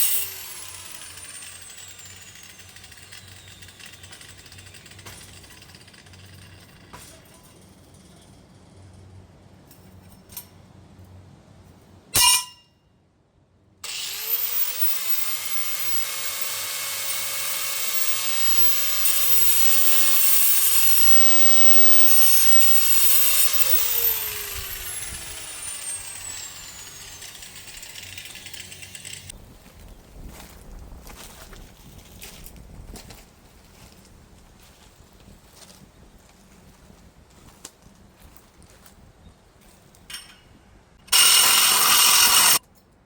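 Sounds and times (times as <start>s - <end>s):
angle grinder cutting metal: 0.0s - 4.6s, 13.8s - 29.3s, 41.0s - 42.6s.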